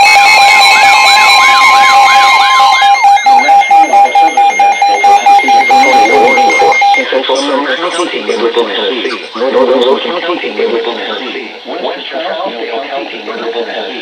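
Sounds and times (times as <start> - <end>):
fast pulsing beep: 0.0 - 7.4
steady high alarm tone: 0.0 - 9.0
warbling chirp: 0.5 - 7.3.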